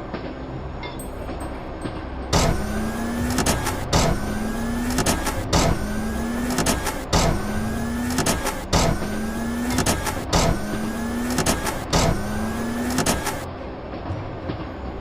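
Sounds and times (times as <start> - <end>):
motor hum rising in pitch: 2.3 - 13.5
sharp click: 2.4 - 13.5.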